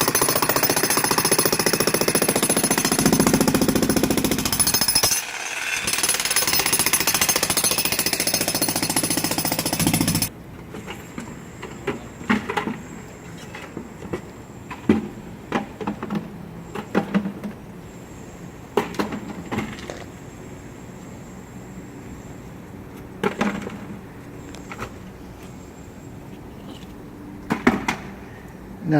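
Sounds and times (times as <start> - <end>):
jackhammer hammering concrete: 0.0 - 10.3
scattered knocks and clunks: 26.7 - 28.2.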